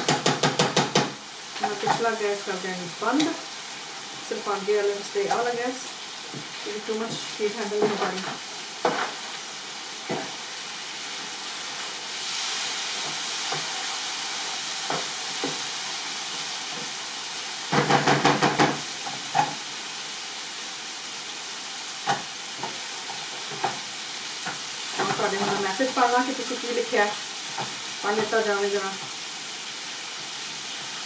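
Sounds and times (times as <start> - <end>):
utensil knocking against pan: 0.0 - 1.2, 17.7 - 18.8
gravy sizzling in a pan: 0.0 - 31.0.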